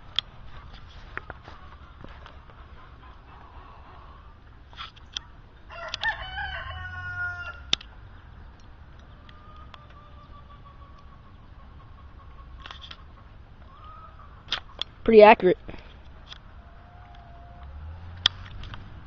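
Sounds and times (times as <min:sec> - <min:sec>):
rooster crowing: 0:05.7 - 0:07.8, 0:16.5 - 0:18.0.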